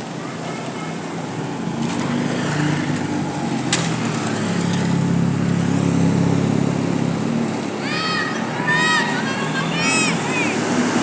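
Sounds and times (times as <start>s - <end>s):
large bus engine running: 4.5s - 11.0s.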